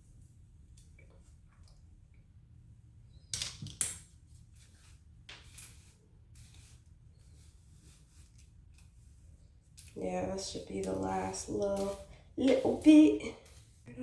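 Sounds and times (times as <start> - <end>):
scissors snipping hair: 10.8 - 13.2.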